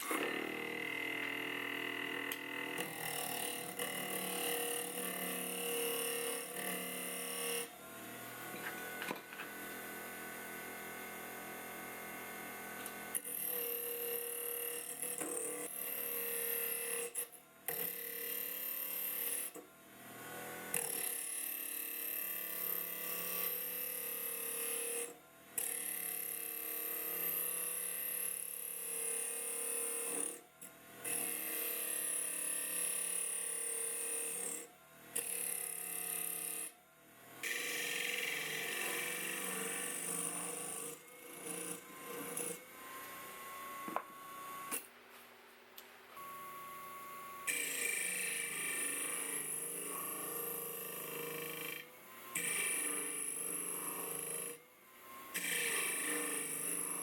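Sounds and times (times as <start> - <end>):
lathe motor whine: 41.0 - 44.8, 46.2 - 49.5.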